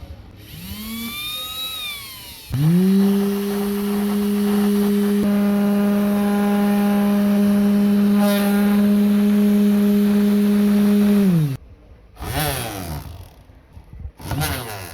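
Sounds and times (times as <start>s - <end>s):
electric motor whining: 0.3s - 11.6s.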